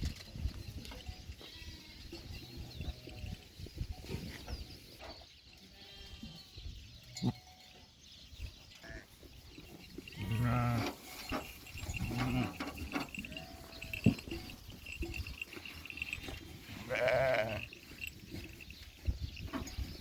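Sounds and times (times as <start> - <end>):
livestock bleating: 1.4 - 2.2, 5.6 - 6.4, 8.8 - 9.2, 10.1 - 11.1, 11.9 - 14.4, 16.6 - 17.7.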